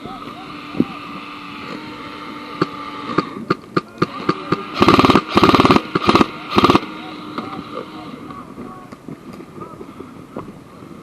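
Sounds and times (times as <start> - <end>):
steady hum: 0.0 - 11.0
airsoft guns firing: 3.1 - 7.0.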